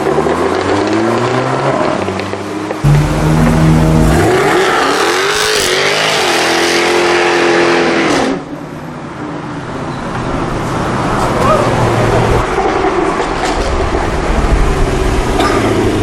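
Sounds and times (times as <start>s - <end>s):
car engine revving hard: 2.8s - 8.1s.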